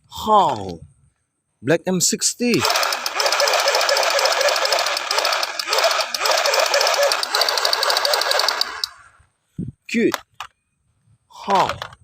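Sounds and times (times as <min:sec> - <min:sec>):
toy machine gun rattling: 0:02.5 - 0:09.1.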